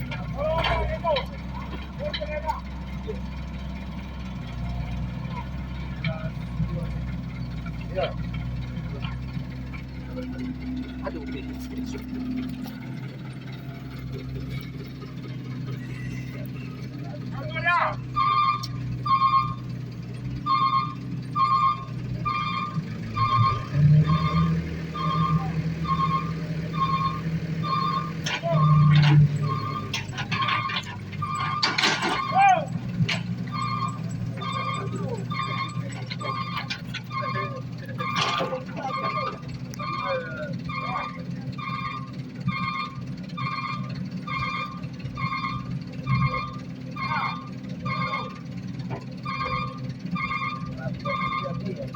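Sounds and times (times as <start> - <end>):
diesel engine running: 0.0 - 51.9
reversing alarm beeping: 17.4 - 19.8, 20.4 - 51.9.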